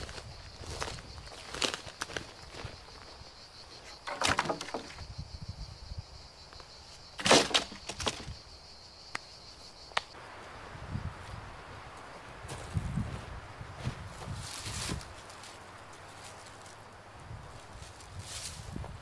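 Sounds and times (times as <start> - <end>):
footsteps crunching on dry twigs: 0.0 - 3.3, 11.2 - 19.0
high insect buzz: 0.0 - 19.0.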